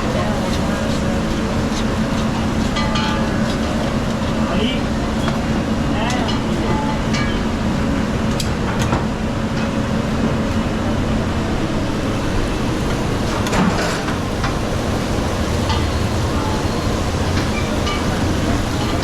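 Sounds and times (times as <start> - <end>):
restaurant background rumble: 0.0 - 19.0.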